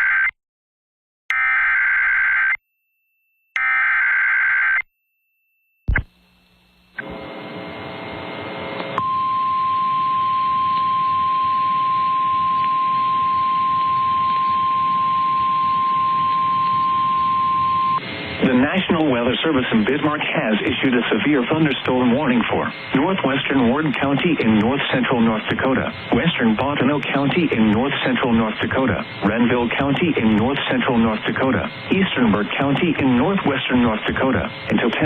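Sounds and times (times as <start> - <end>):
click: 8.8 - 9.0
radio hiss: 16.4 - 35.0.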